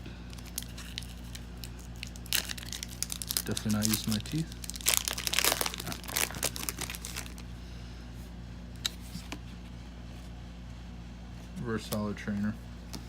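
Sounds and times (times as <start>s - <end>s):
faint steady hum: 0.0s - 13.0s
foil wrapper crinkling and ripping: 0.3s - 7.5s.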